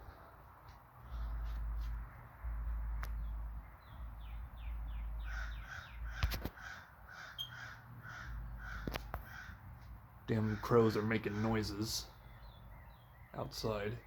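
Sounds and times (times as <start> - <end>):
crows cawing: 5.2 - 12.1.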